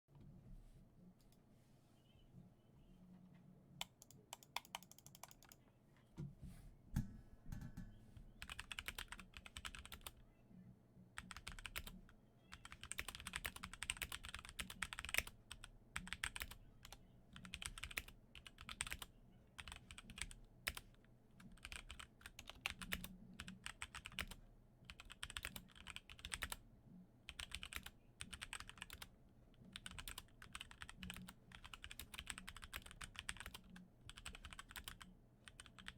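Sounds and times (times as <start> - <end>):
typing on mechanical keyboard: 3.8 - 5.6, 7.6 - 10.2, 11.2 - 26.6, 27.3 - 29.1, 29.7 - 35.9.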